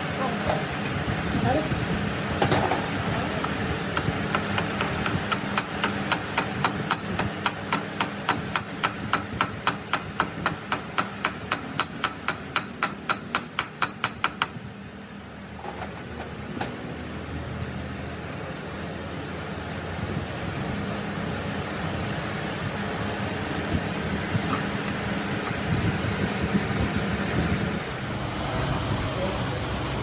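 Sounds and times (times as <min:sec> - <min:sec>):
hammer striking metal: 0:03.4 - 0:14.6.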